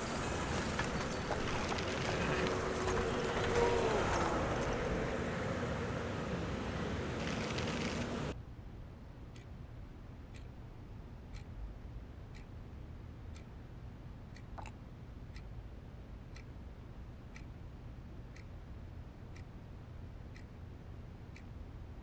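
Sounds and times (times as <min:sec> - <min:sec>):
low background hum: 0:00.0 - 0:22.0
clock ticking: 0:11.3 - 0:11.6, 0:16.2 - 0:17.6, 0:18.2 - 0:18.7, 0:20.3 - 0:20.6.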